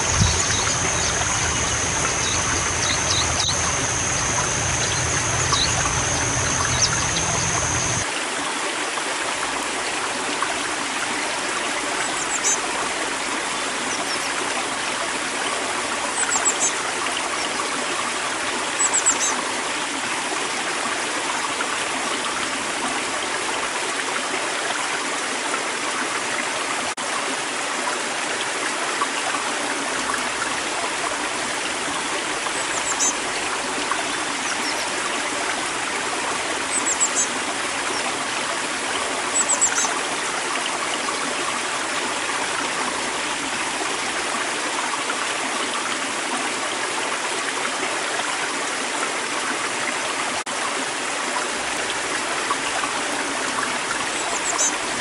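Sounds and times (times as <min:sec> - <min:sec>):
small bird chirping: 0:00.0 - 0:08.0, 0:39.4 - 0:39.9
river water flowing: 0:00.0 - 0:55.0.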